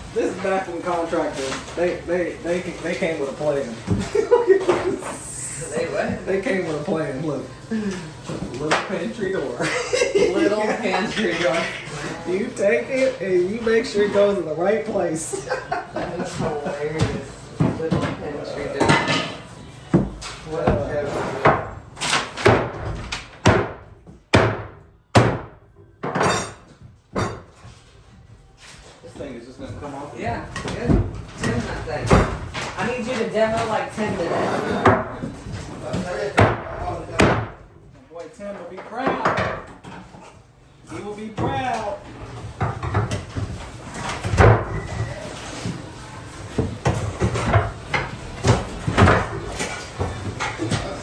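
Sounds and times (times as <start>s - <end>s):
wooden cabinets knocked and pried: 16.1s - 27.6s, 30.3s - 37.9s, 38.9s - 40.2s, 41.3s - 45.2s, 46.5s - 51.0s.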